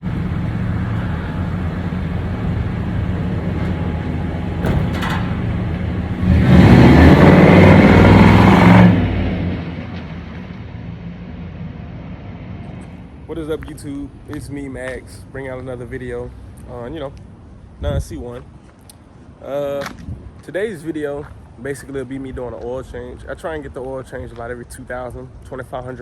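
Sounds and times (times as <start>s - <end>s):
car engine idling and revving: 0.0s - 13.0s.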